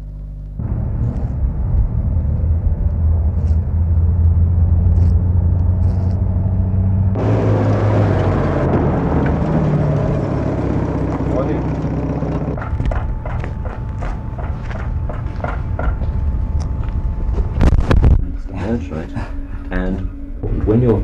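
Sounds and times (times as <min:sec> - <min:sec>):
low mechanical rumble with hum: 0:00.0 - 0:21.0.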